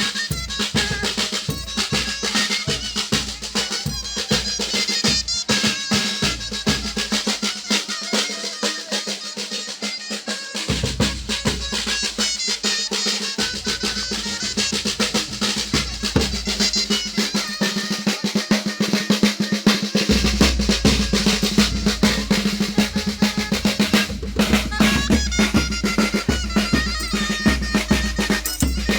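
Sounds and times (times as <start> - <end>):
fast drum strokes: 0.0 - 28.9
high melodic notes: 18.8 - 28.9.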